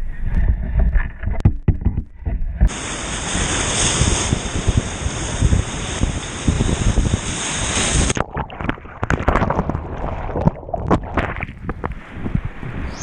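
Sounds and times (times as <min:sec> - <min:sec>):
wind buffeting microphone: 0:00.2 - 0:13.0
river water rushing: 0:02.7 - 0:03.8
water splashes and knocks: 0:08.1 - 0:12.4.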